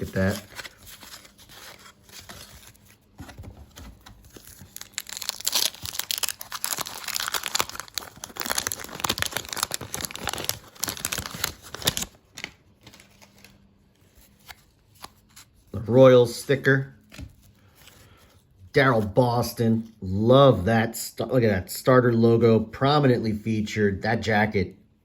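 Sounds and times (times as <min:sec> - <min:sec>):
wax-paper wrapper crinkling: 0:00.0 - 0:15.8
wrapper being torn open: 0:04.2 - 0:13.6.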